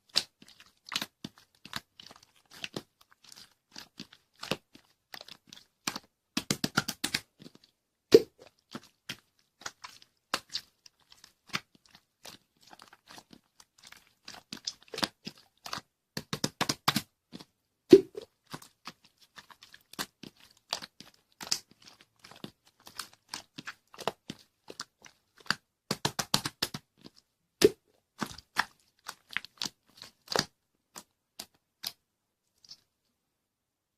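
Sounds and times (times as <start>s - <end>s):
crunching and crackling clicks: 0.0s - 7.7s, 18.2s - 32.9s.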